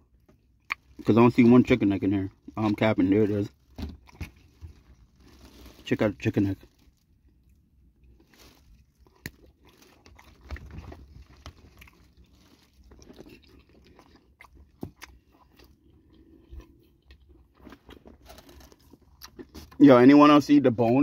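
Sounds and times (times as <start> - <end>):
person chewing crunching bones: 0.5 - 1.1, 3.5 - 5.5, 7.1 - 19.8.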